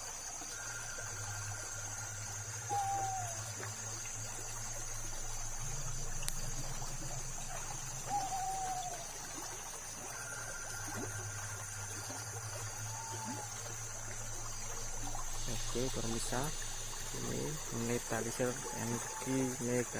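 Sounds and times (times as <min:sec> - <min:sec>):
steady hiss with high drone: 0:00.0 - 0:19.9
falling whistled call: 0:02.5 - 0:03.6, 0:07.5 - 0:09.4, 0:12.5 - 0:13.7.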